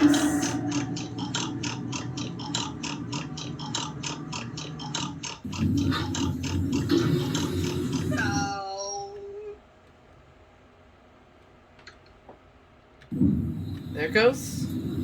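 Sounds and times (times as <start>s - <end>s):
elevator machinery clicking: 0.0s - 8.5s
low machine hum: 0.0s - 15.0s.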